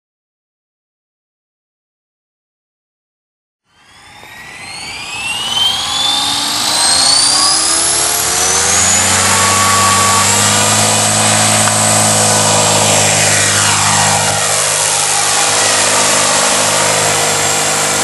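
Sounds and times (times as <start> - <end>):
model helicopter engine whine: 3.7 - 18.0.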